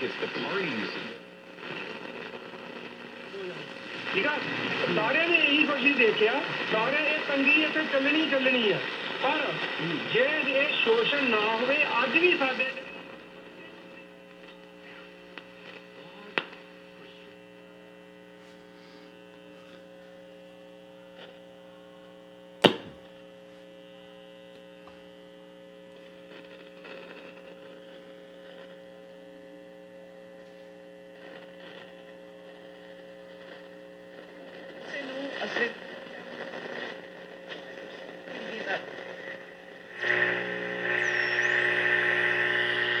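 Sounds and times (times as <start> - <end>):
radio clicks: 0.0 - 17.0, 22.6 - 23.1, 33.3 - 43.0
radio mains hum: 0.0 - 43.0.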